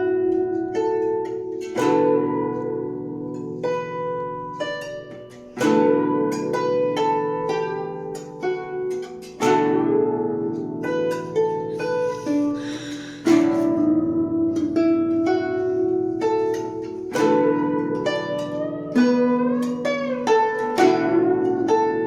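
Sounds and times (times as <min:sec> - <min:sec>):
heavy low zither strokes: 0:00.0 - 0:22.0
zither plucked notes and chords: 0:00.0 - 0:22.0.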